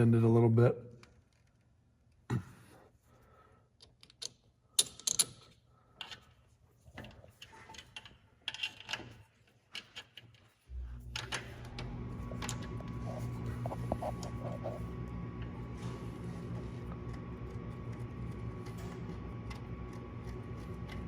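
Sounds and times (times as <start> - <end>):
steady low hum: 10.7 - 21.0.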